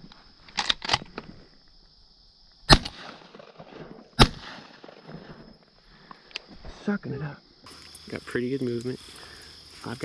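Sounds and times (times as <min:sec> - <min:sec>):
shotgun blasts: 0:02.7 - 0:03.6, 0:04.2 - 0:04.9.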